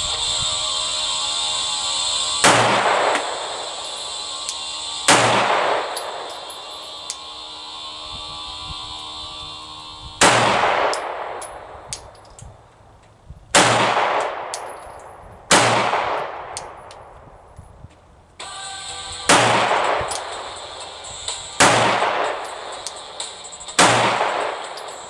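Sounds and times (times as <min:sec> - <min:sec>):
pistol shots echoing: 0:02.4 - 0:03.9, 0:05.0 - 0:06.6, 0:10.2 - 0:12.1, 0:13.5 - 0:17.1, 0:19.3 - 0:20.6, 0:21.6 - 0:23.1, 0:23.7 - 0:25.0
faint ringing: 0:03.2 - 0:10.2
light metallic clinks: 0:05.9 - 0:07.2, 0:11.4 - 0:12.5, 0:14.6 - 0:15.2, 0:24.6 - 0:25.0.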